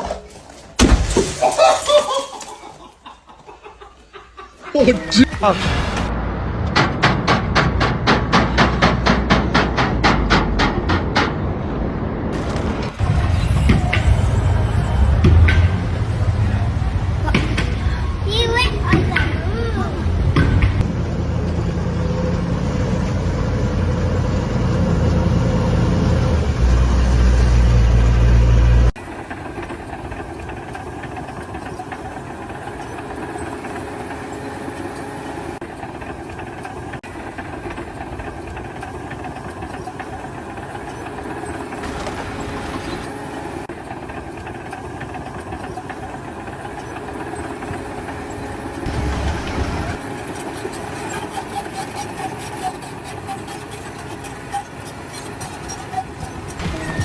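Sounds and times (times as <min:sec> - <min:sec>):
low engine rumble: 0:04.9 - 0:51.9
quiet mechanical engine noise: 0:19.0 - 0:57.0.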